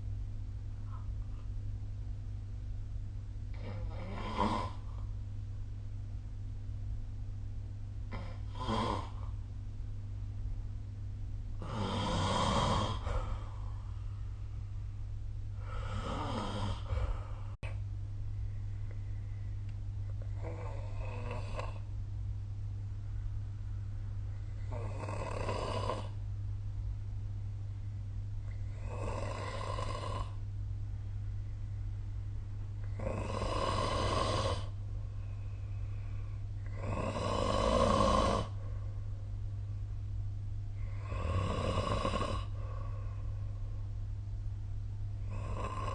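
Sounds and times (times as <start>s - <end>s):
low hum: 0.0s - 11.8s, 12.7s - 33.8s, 34.5s - 36.9s, 38.5s - 41.4s, 42.2s - 45.9s
person snoring: 3.5s - 5.0s, 8.1s - 9.4s, 11.6s - 13.8s, 15.6s - 17.8s, 20.3s - 21.9s, 24.6s - 26.2s, 28.5s - 30.4s, 32.8s - 34.8s, 36.6s - 38.6s, 40.8s - 43.2s, 45.2s - 45.9s.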